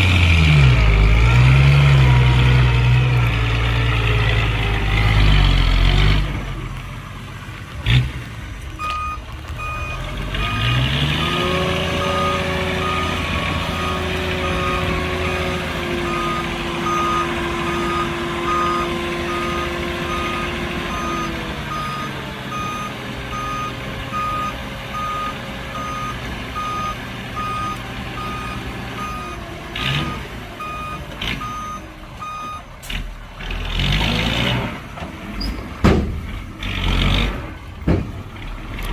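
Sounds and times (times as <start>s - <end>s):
diesel engine running: 0.0s - 38.9s
reversing alarm beeping: 8.8s - 32.7s.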